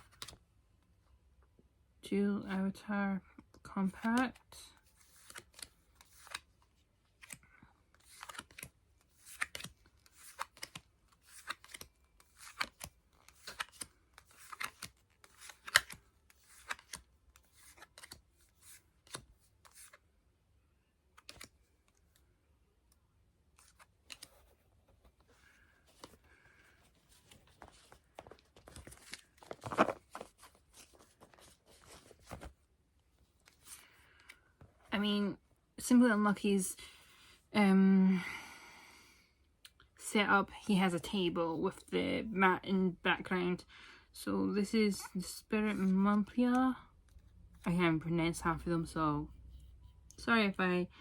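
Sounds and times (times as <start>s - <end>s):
trading cards rustling: 4.9s - 20.0s, 23.5s - 34.9s.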